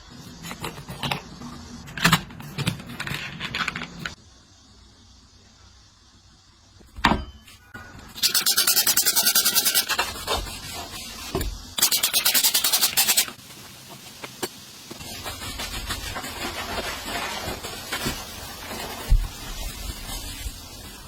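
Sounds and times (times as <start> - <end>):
brisk scrubbing: 8.2 - 13.4, 15.0 - 20.6.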